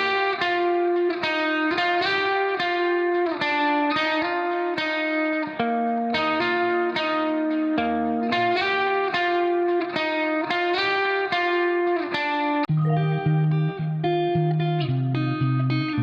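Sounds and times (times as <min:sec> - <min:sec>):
plucked guitar melody: 0:00.0 - 0:16.0.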